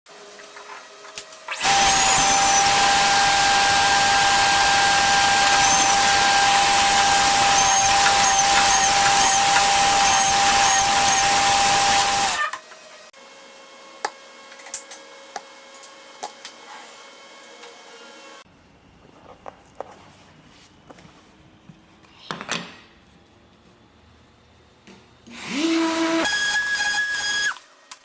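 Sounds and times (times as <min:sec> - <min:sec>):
woodworking tool hissing and whining: 0:01.5 - 0:12.5, 0:25.2 - 0:27.9.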